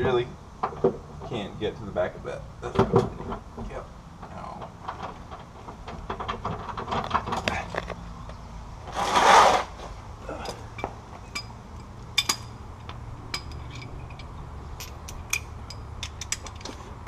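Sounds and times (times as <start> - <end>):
wrenches and ratchet clicking: 10.3 - 17.0.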